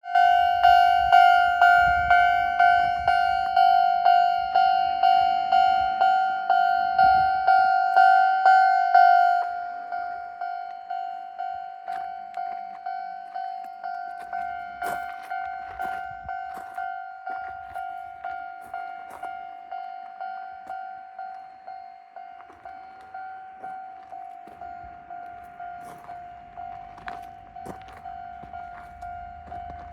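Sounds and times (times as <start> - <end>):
level crossing warning bell: 0.0 - 29.9.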